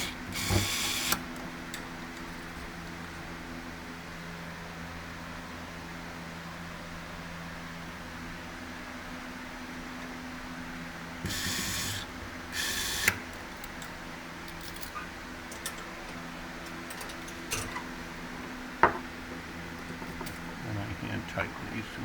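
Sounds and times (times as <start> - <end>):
power driver hissing bursts: 0.0 - 1.4, 11.2 - 13.3.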